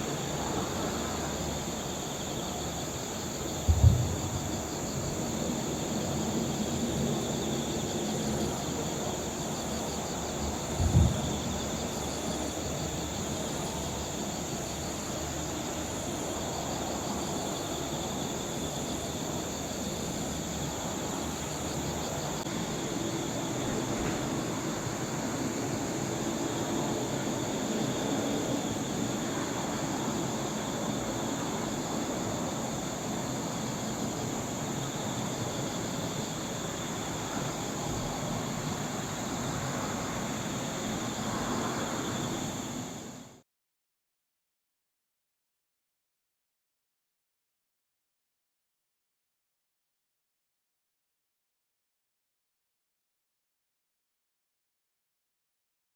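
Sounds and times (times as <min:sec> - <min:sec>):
distant traffic hum: 0:00.0 - 0:14.2
crickets chirping: 0:00.0 - 0:43.4
low thumps: 0:03.6 - 0:05.3.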